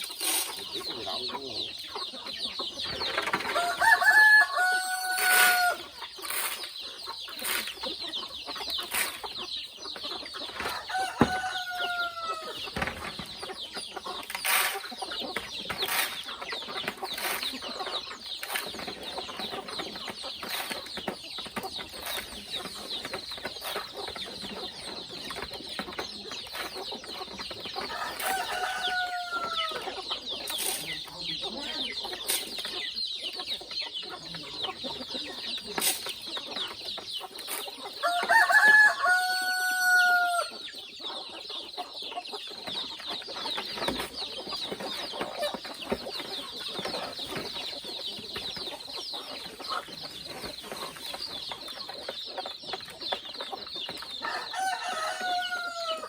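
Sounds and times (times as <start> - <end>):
chickens clucking: 0.0 - 56.0
rooster crowing: 3.6 - 5.8, 10.7 - 12.5, 27.9 - 29.8, 38.0 - 40.5, 54.2 - 56.0.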